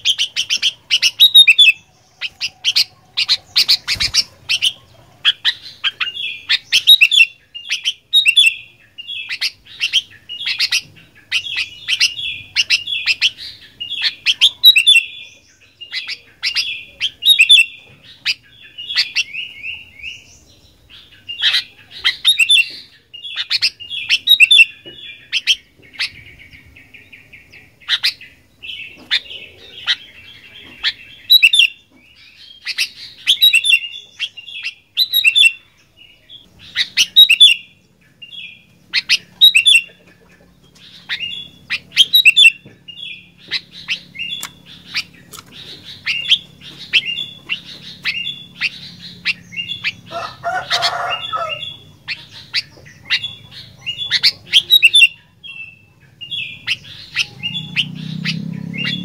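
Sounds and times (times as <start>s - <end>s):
bulbul chirping song: 0.0s - 59.0s
harsh bird call: 40.9s - 59.0s.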